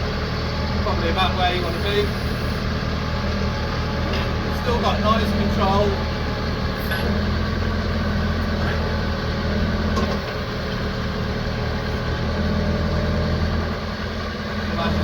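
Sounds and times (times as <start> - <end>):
diesel tractor engine running: 0.0 - 15.0.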